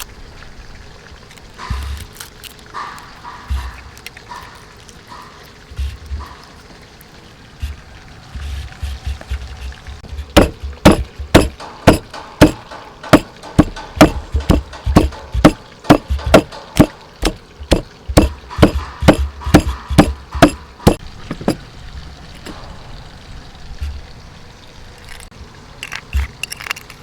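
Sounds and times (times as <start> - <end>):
chopping on a wooden board: 10.1 - 21.6.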